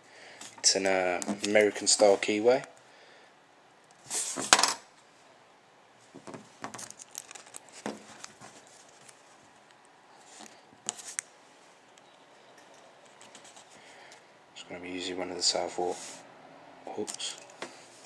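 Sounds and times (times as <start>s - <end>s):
small metal clinks and scrapes: 6.8s - 9.2s, 11.8s - 13.8s.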